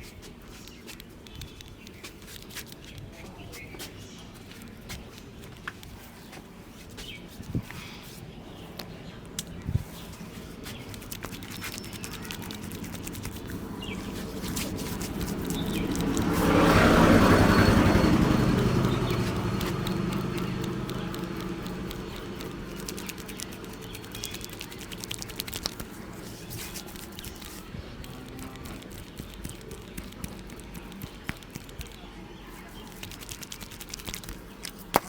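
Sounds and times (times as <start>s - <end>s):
light clicks and taps: 10.7s - 32.1s
vehicle passing by: 11.0s - 32.0s.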